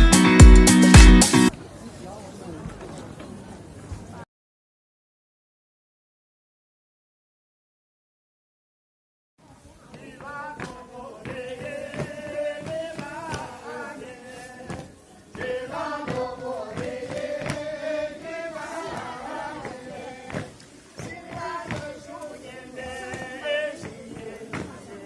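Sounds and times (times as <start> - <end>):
drum hits: 0.0 - 1.5
people singing: 9.9 - 25.0.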